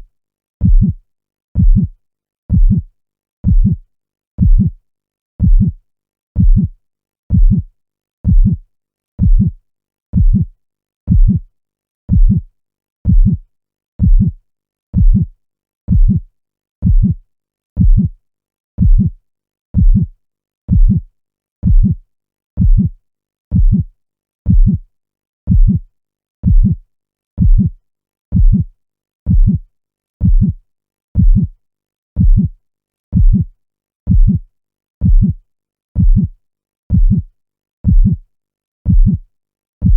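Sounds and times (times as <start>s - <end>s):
heartbeat lub-dub: 0.6s - 1.0s, 1.6s - 1.9s, 2.5s - 2.8s, 3.4s - 3.8s, 4.4s - 4.8s, 5.4s - 5.8s, 6.4s - 6.7s, 7.3s - 7.7s, 8.3s - 8.6s, 9.2s - 9.6s, 10.2s - 10.5s, 11.1s - 11.4s, 12.1s - 12.4s, 13.1s - 13.4s, 14.0s - 14.4s, 15.0s - 15.3s, 15.9s - 16.2s, 16.8s - 17.2s, 17.8s - 18.1s, 18.8s - 19.1s, 19.8s - 20.1s, 20.7s - 21.0s, 21.6s - 22.0s, 22.6s - 22.9s, 23.5s - 23.9s, 24.5s - 24.8s, 25.5s - 25.8s, 26.4s - 26.8s, 27.4s - 27.7s, 28.3s - 28.7s, 29.3s - 29.6s, 30.2s - 30.6s, 31.2s - 31.5s, 32.2s - 32.5s, 33.1s - 33.5s, 34.1s - 34.4s, 35.0s - 35.4s, 36.0s - 36.3s, 36.9s - 37.2s, 37.8s - 38.2s, 38.9s - 39.2s.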